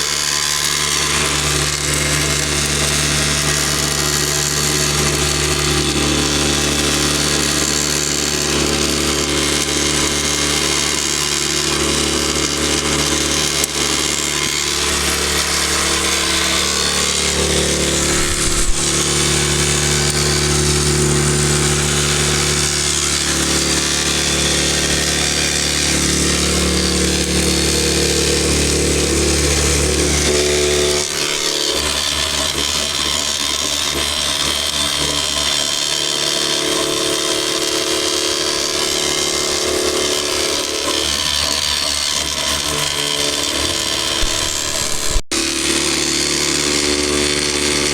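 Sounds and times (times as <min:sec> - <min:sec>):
vibrating screen rattling: 0:00.0 - 0:33.4
motor hum: 0:00.0 - 0:47.9.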